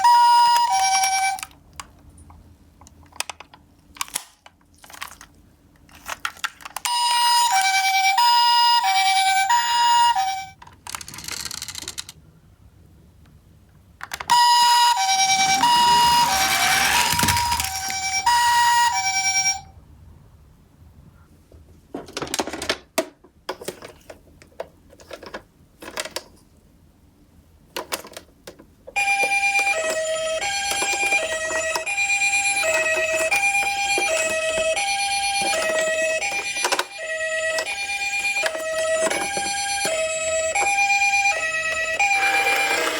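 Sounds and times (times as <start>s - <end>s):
toy ambulance two-tone siren: 0.0s - 1.5s, 6.8s - 10.6s, 14.3s - 19.8s, 29.0s - 42.9s
toy cars clicking and knocking: 10.6s - 12.2s, 15.2s - 18.3s, 27.8s - 42.9s
lower faster two-tone siren: 14.3s - 19.7s, 29.0s - 42.9s.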